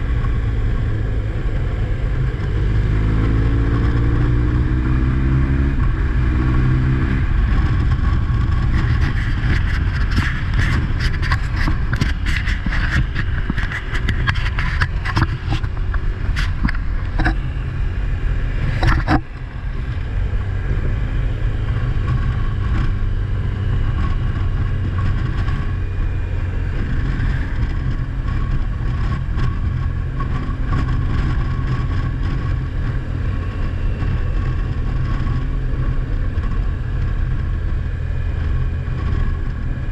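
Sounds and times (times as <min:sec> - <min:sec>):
car engine and road rumble: 0:00.0 - 0:39.9
clicks and crackles: 0:07.6 - 0:17.4, 0:18.7 - 0:19.5.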